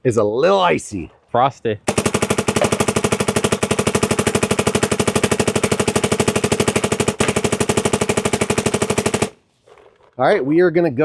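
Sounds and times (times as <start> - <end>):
paintball marker firing rapidly: 1.9 - 9.4.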